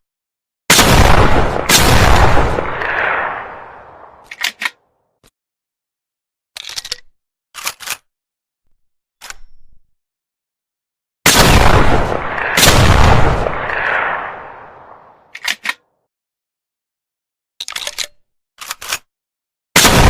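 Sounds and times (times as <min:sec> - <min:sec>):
shotgun shot with echo: 0:00.7 - 0:04.2, 0:11.3 - 0:15.0
gun action clicks: 0:04.2 - 0:04.8, 0:06.6 - 0:08.1, 0:15.3 - 0:15.8, 0:17.6 - 0:19.1.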